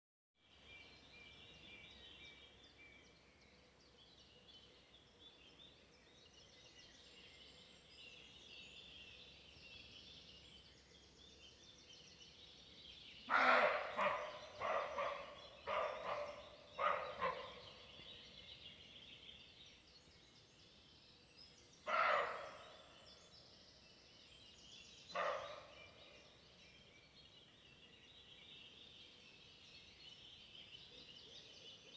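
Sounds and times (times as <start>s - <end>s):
loud animal calls: 13.3s - 17.5s, 21.9s - 22.6s.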